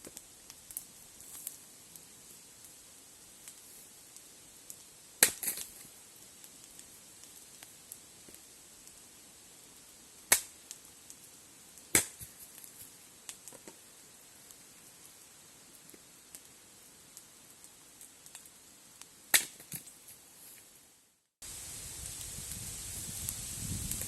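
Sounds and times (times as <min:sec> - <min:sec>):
campfire crackling: 0:00.0 - 0:24.0
loud fire pops: 0:03.4 - 0:09.0, 0:10.2 - 0:13.9, 0:19.3 - 0:19.9, 0:21.4 - 0:24.0.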